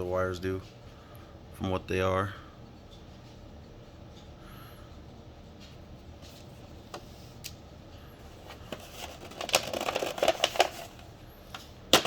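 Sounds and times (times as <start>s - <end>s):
packaging crinkling: 8.6s - 12.0s.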